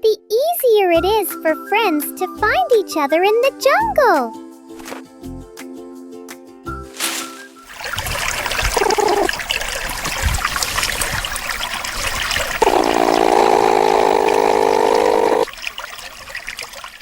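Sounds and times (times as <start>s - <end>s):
low gurgle: 7.0s - 17.0s
water bubbling and trickling: 7.0s - 17.0s.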